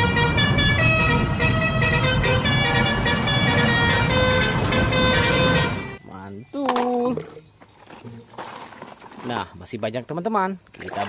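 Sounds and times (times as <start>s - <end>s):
bus horn playing a tune: 0.0s - 6.0s
low engine rumble: 0.0s - 6.0s.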